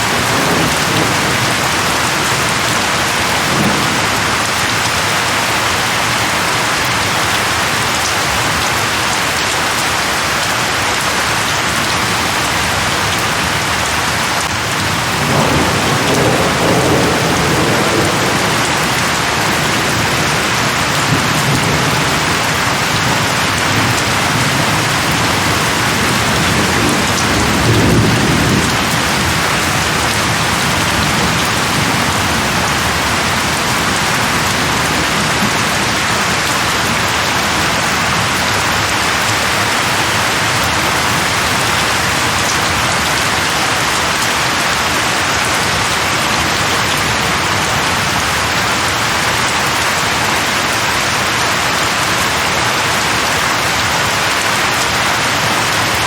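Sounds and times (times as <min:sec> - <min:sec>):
distant thunder rumbling: 0:00.0 - 0:05.4, 0:14.7 - 0:38.9
heavy rain on leaves: 0:00.0 - 0:56.0.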